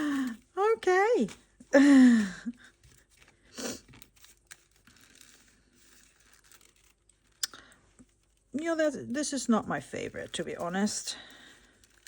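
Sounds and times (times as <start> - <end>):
packaging rustling and crinkling: 2.6 - 12.0.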